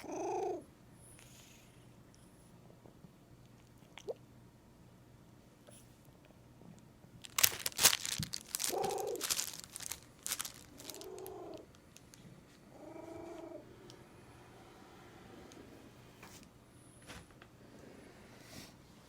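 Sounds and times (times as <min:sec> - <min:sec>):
cat chewing plastic wrap: 0:07.2 - 0:12.3
cat calls: 0:08.6 - 0:09.2, 0:10.7 - 0:11.7, 0:12.7 - 0:13.7.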